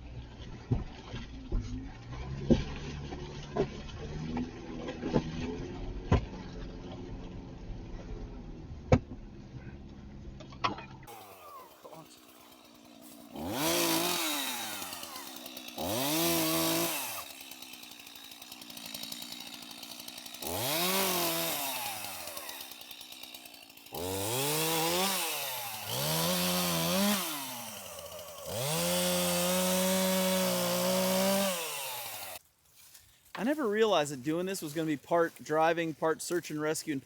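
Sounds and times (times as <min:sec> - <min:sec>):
chainsaw revving: 0:11.1 - 0:32.4.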